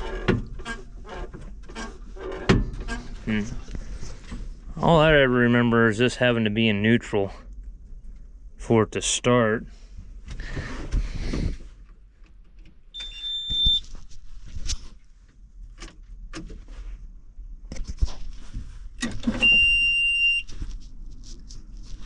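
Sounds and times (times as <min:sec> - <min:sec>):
short electronic warning beeps: 0:13.0 - 0:13.8, 0:19.4 - 0:20.5.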